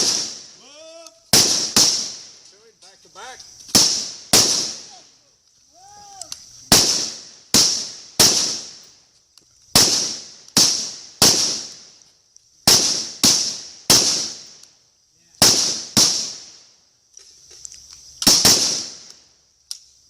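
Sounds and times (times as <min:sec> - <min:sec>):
rifle shots echoing: 0:00.0 - 0:00.6, 0:01.3 - 0:02.4, 0:03.7 - 0:05.0, 0:06.7 - 0:08.9, 0:09.7 - 0:11.9, 0:12.6 - 0:14.5, 0:15.4 - 0:16.6, 0:18.2 - 0:19.1.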